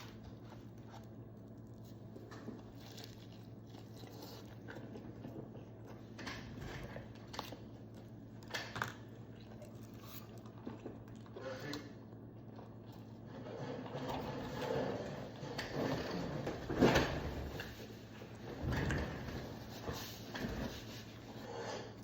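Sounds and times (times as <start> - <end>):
chewing and biting: 0.0 - 6.1, 6.8 - 13.1
steady low hum: 0.0 - 22.0.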